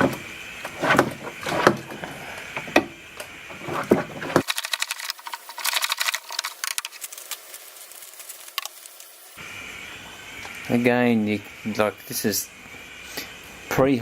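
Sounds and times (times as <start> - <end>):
clicks and rattling: 2.7 - 7.5.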